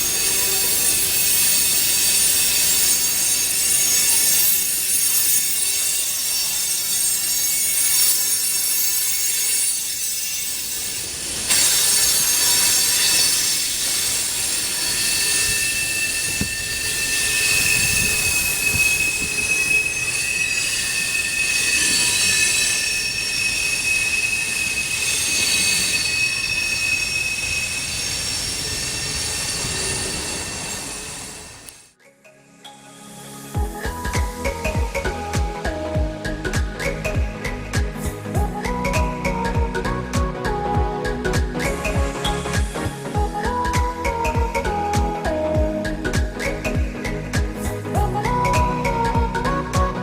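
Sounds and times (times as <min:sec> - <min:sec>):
rumble and clatter of train cars: 0:00.0 - 0:31.8
train wheels squealing on rails: 0:00.0 - 0:32.0, 0:33.5 - 0:50.0.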